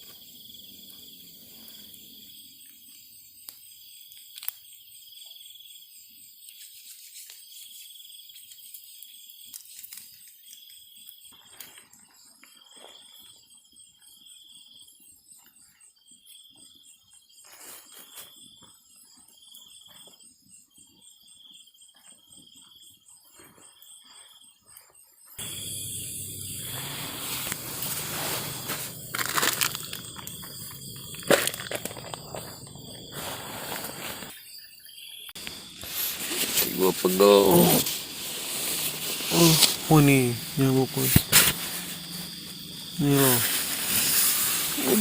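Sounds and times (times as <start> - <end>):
cricket chirping in pulses: 0.0 - 45.0
high continuous insect trill: 0.0 - 45.0
loud rustling: 25.4 - 34.3, 35.7 - 42.6, 43.2 - 45.0.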